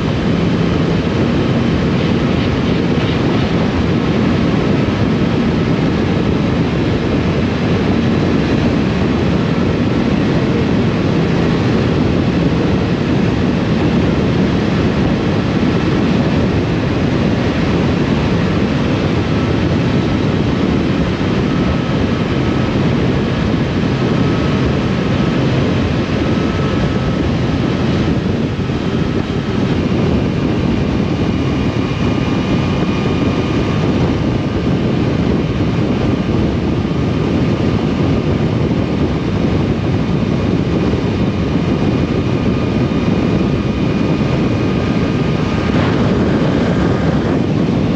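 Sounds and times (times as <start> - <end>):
wind buffeting microphone: 0.0 - 47.9
motorcycle engine: 42.1 - 47.9.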